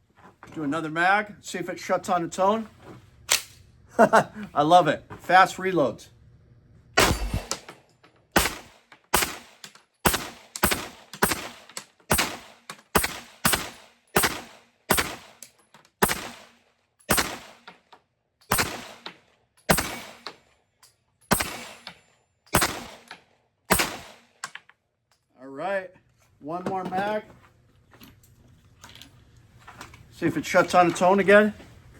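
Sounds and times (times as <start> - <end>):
pistol shots: 7.0 - 7.7, 8.4 - 15.4, 16.0 - 17.7, 18.5 - 20.3, 21.3 - 23.1, 23.7 - 24.4.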